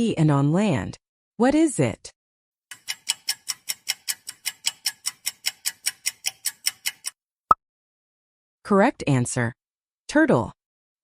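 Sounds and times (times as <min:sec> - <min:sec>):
timer ticking: 0:02.7 - 0:07.2.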